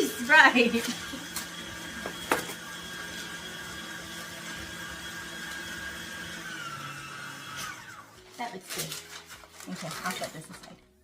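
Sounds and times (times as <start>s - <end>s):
electric mixer whining: 0.0s - 8.3s.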